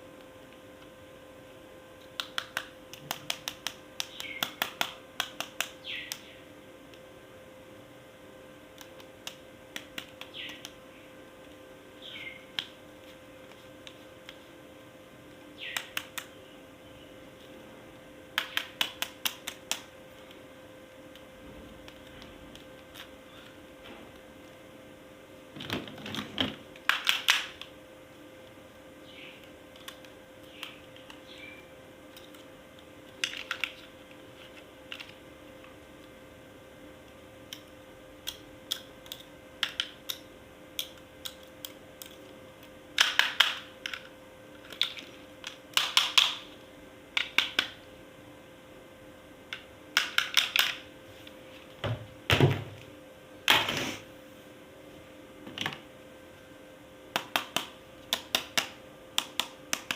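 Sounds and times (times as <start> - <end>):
plastic toy parts clicking: 33.1 - 33.9.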